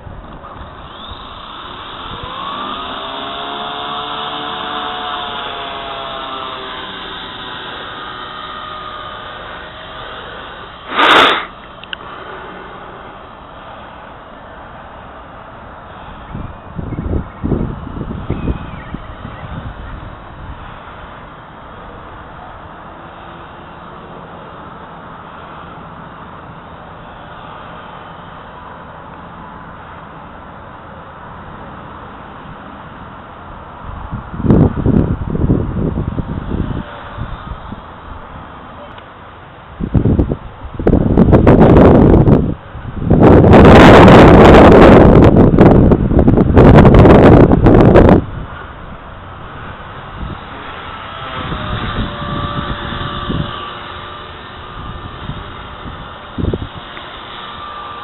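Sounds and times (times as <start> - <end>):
helicopter motor and rotor whine: 0.0 - 58.0
loud burst of noise: 0.6 - 32.6, 33.2 - 58.0
wind rushing over microphone: 15.8 - 22.7, 33.8 - 38.5, 39.7 - 57.3.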